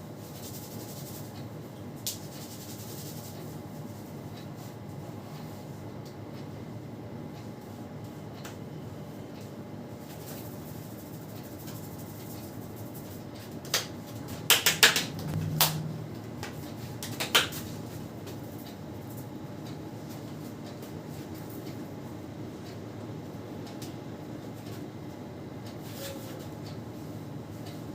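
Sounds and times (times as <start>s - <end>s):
fan hum: 0.0s - 27.9s
sharp smacks of hands: 14.5s - 15.8s.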